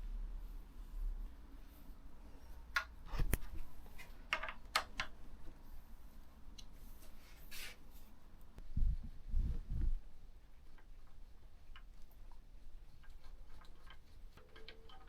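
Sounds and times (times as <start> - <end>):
brief rub: 7.0 - 7.8
metal tools clicking and tapping: 13.7 - 15.0.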